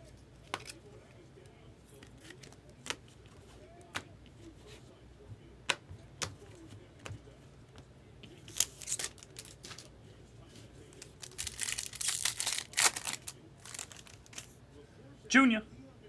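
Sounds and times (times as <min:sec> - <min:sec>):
foil crinkling and tearing: 0:08.5 - 0:09.9, 0:11.0 - 0:14.5.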